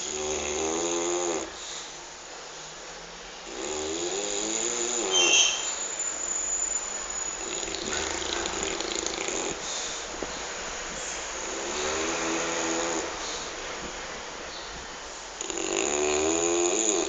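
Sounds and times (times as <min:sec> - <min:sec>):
dog snoring: 0:00.0 - 0:01.6, 0:03.4 - 0:05.3, 0:07.4 - 0:09.8, 0:11.4 - 0:13.5, 0:15.4 - 0:17.0.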